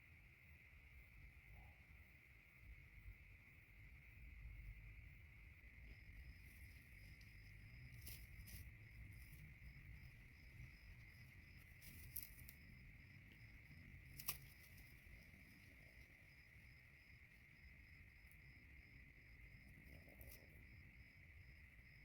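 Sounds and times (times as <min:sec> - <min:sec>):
faint insect chirp: 0:00.0 - 0:22.0
insect chorus drone: 0:00.0 - 0:22.0
soft clicks or rustles: 0:14.1 - 0:15.0.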